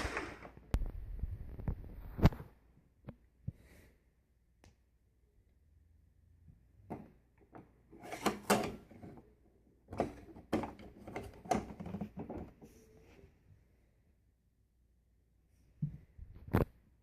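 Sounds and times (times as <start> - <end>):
objects knocking and rattling: 9.9 - 12.7.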